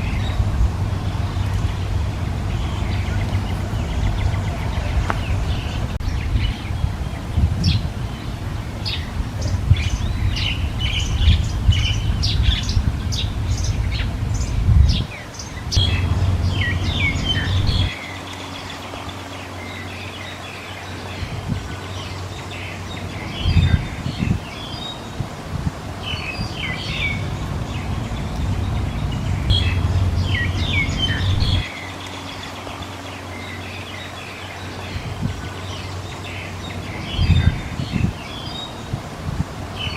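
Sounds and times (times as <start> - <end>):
steady low rumble: 0.0 - 39.9
baby birds chirping: 14.9 - 18.2, 26.2 - 32.3.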